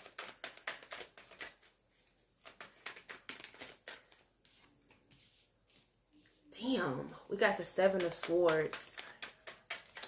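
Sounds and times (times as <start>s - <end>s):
cards rustling and flicking: 0.0s - 1.8s, 2.4s - 5.9s, 7.8s - 10.0s.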